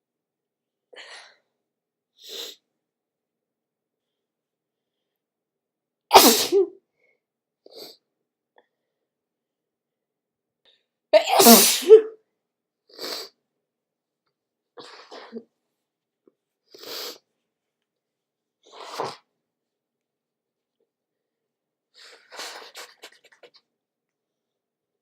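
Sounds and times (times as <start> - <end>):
person sneezing: 6.1 - 6.8, 11.2 - 12.2.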